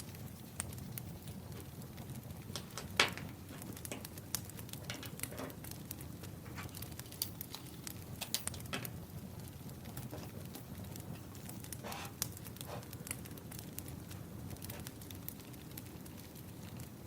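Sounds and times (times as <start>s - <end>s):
wood fire crackling: 0.0s - 17.0s.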